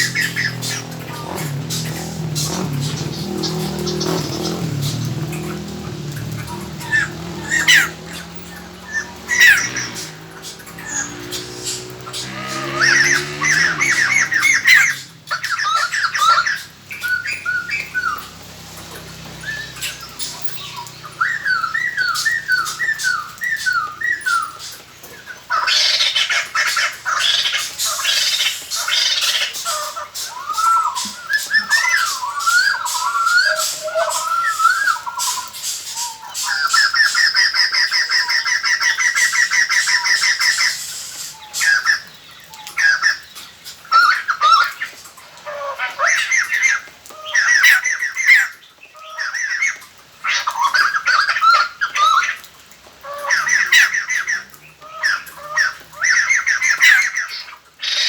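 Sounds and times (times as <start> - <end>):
bird chattering and cackling: 0.0 - 18.3, 19.6 - 43.2
bird rattle call: 25.5 - 42.0.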